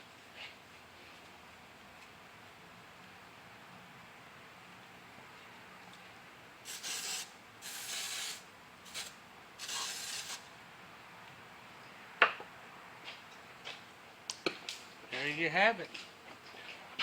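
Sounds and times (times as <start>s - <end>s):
shoestring rubbing metal: 6.7s - 10.4s.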